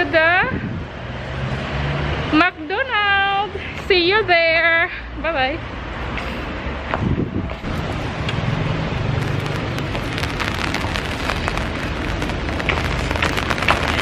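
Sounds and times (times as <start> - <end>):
low rumble: 7.6 - 14.0
raindrops ticking on microphone: 7.6 - 14.0
heavy rain falling: 7.7 - 14.0.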